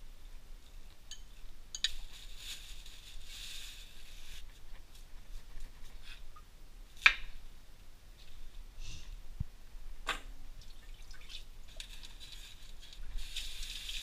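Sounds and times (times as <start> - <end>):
soft scraping or rustling: 1.9 - 6.3, 11.7 - 14.0.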